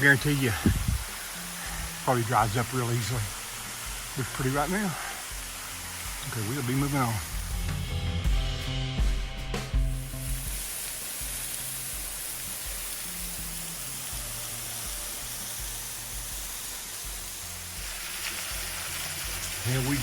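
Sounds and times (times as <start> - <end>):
waterfall rushing: 0.0 - 7.6
soft background music: 0.0 - 20.0.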